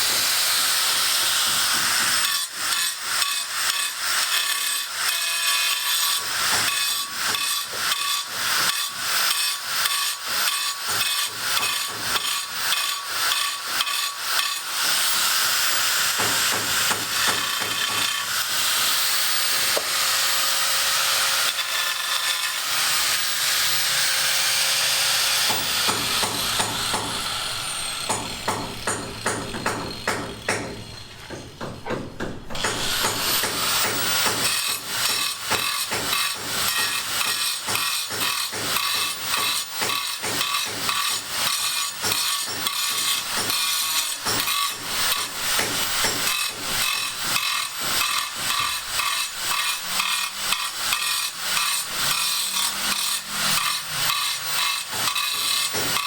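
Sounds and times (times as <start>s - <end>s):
hammering knocks: 16.2s - 18.1s, 25.5s - 37.0s
sawing hiss: 22.8s - 56.0s.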